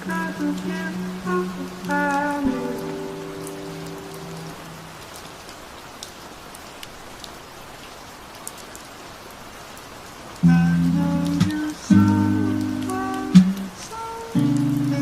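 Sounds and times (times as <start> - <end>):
music with sustained chords: 0.0 - 4.8, 10.4 - 15.0
rain drops ticking: 0.0 - 15.0
steady rain: 0.0 - 15.0.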